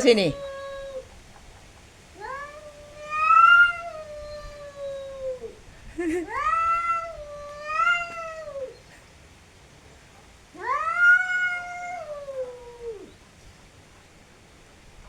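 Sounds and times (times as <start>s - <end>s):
cat yowling: 0.0s - 1.2s, 2.2s - 5.6s, 6.2s - 8.8s, 10.6s - 13.1s.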